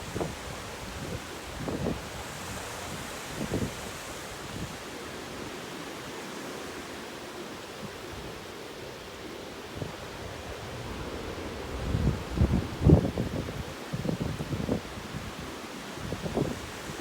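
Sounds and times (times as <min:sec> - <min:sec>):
wind gusts buffeting microphone: 0:00.0 - 0:04.8, 0:09.7 - 0:17.0
heavy rain and wind hiss: 0:00.0 - 0:17.0.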